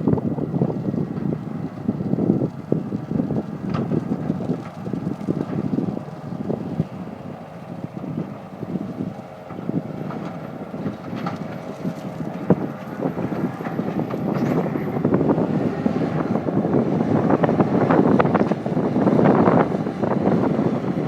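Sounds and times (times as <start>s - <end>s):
diesel engine running: 0.0s - 21.0s
wind buffeting microphone: 0.0s - 21.0s.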